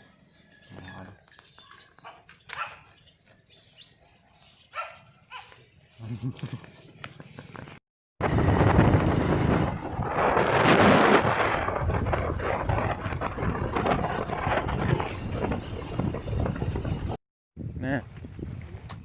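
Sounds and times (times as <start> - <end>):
wind buffeting microphone: 8.2 - 19.0.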